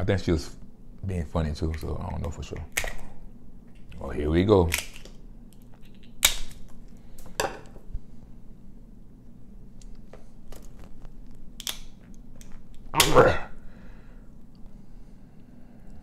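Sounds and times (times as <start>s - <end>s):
crab shell cracking: 1.7s - 3.1s, 3.8s - 7.3s, 10.5s - 13.1s
small clicks and snaps: 4.7s - 7.3s, 9.8s - 13.0s.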